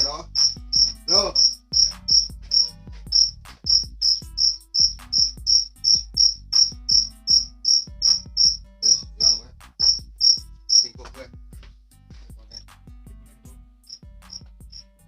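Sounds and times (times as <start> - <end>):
cricket chirping: 0.4 - 10.9.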